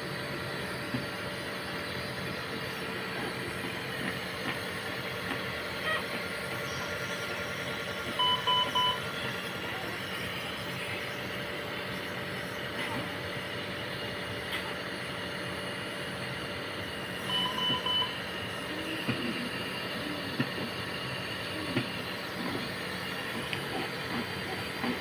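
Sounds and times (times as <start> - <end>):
equipment hum: 0.0 - 25.0
monitor beeps: 8.2 - 9.1, 17.2 - 18.2.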